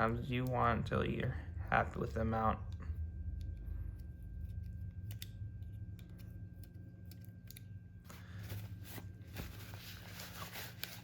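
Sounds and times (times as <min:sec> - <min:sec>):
steady low hum: 0:00.0 - 0:11.0
handling rustle: 0:08.1 - 0:11.0.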